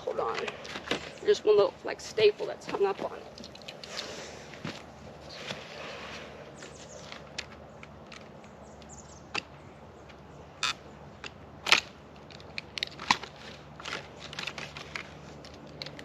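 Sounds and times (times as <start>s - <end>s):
small crackles and rustles: 0.1s - 9.0s, 12.1s - 16.0s.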